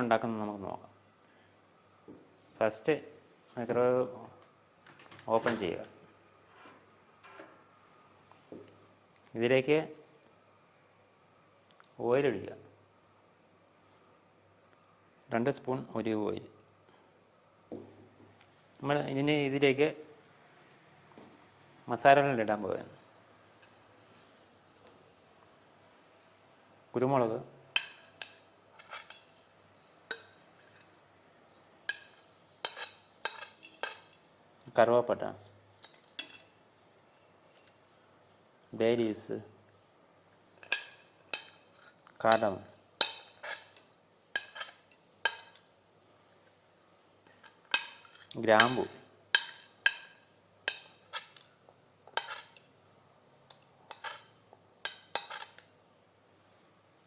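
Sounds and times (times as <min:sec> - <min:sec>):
spices clinking against bowl: 0:27.7 - 0:31.0, 0:31.9 - 0:34.4, 0:40.6 - 0:45.7, 0:47.4 - 0:55.8.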